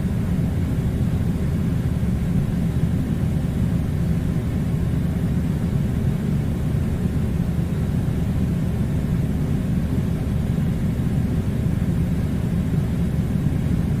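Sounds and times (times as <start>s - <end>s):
air conditioner running: 0.0s - 14.0s.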